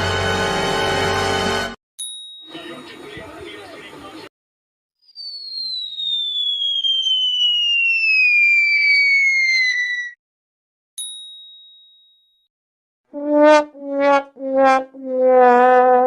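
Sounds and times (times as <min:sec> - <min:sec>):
high ding: 0:02.0 - 0:02.7, 0:11.0 - 0:12.5
cartoon whistle falling in pitch: 0:05.0 - 0:10.2.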